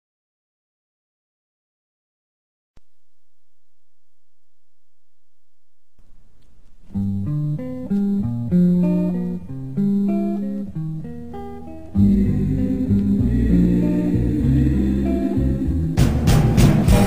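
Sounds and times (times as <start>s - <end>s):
single melodic notes: 7.0s - 16.2s
soul band playing: 7.0s - 17.0s.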